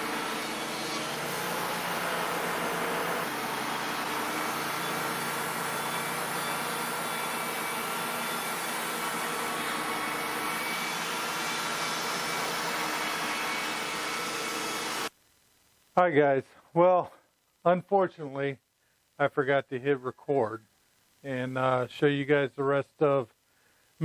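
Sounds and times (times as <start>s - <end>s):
band saw cutting log: 0.0s - 15.1s.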